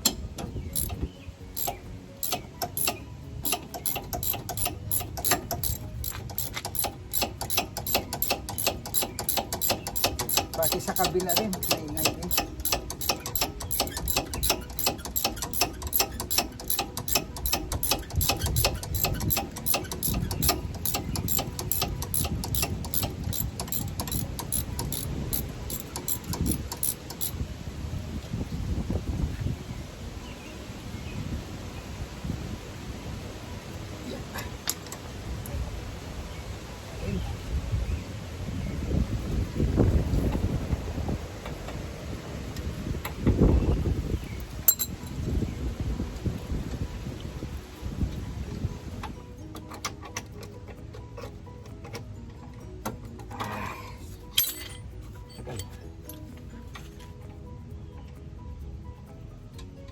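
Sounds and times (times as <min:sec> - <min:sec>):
wind buffeting microphone: 0:00.0 - 0:02.0, 0:17.1 - 0:34.3, 0:35.0 - 0:49.4
rapid mechanical clicking: 0:00.0 - 0:27.4.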